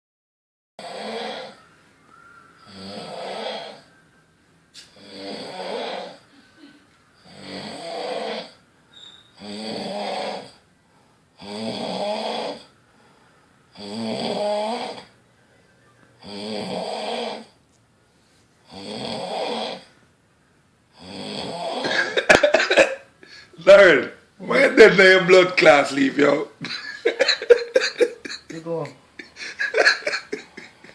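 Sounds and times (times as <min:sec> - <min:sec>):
person snoring: 0:00.8 - 0:01.6, 0:02.7 - 0:03.9, 0:05.0 - 0:06.2, 0:07.2 - 0:08.6, 0:09.4 - 0:10.6, 0:11.4 - 0:12.7, 0:13.8 - 0:15.1, 0:16.2 - 0:17.5, 0:18.7 - 0:19.9, 0:21.0 - 0:22.9, 0:29.2 - 0:30.9
quiet breath: 0:10.8 - 0:11.3, 0:12.7 - 0:13.7, 0:18.0 - 0:18.6, 0:23.2 - 0:23.6.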